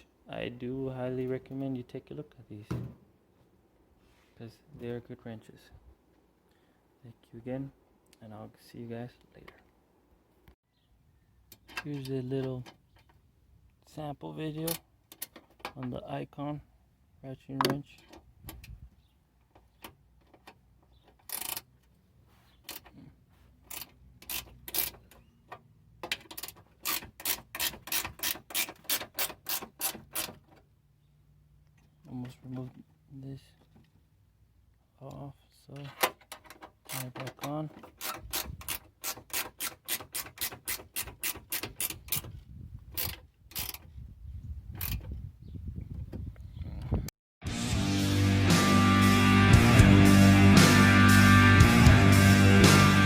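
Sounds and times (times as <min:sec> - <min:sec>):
ratcheting wrench clicking: 0:21.2 - 0:21.7, 0:23.6 - 0:25.2, 0:26.1 - 0:30.3, 0:37.9 - 0:42.3, 0:43.0 - 0:43.9.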